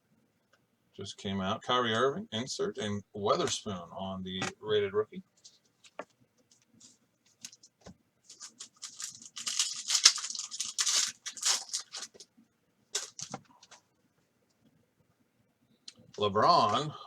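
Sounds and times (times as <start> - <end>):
plastic wrapper tearing and crinkling: 8.3 - 12.2, 13.0 - 13.4.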